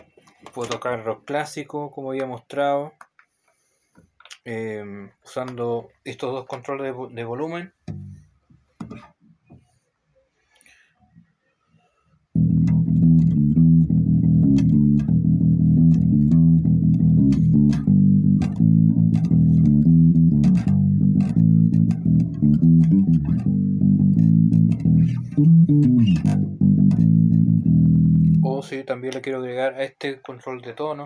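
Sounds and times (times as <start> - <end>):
electric bass guitar line: 7.9 - 8.2, 12.4 - 28.8.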